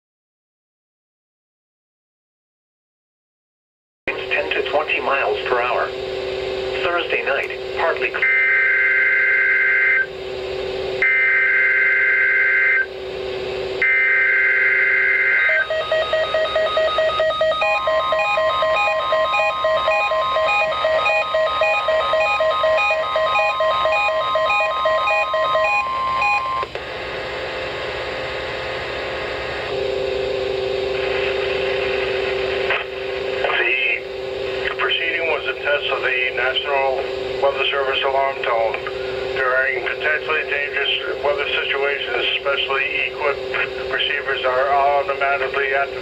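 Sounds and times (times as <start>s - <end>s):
steady warning alarm tone: 4.1s - 10.4s, 11.0s - 26.8s, 32.0s - 46.0s
radio hiss and hum: 4.1s - 16.3s, 26.5s - 46.0s.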